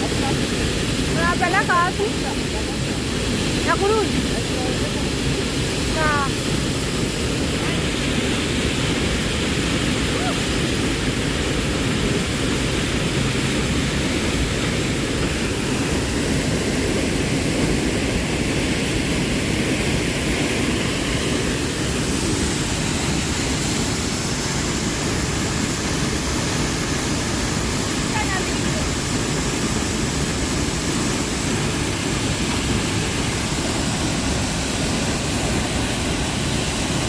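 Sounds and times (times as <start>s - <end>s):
rushing water roar: 0.0s - 37.0s.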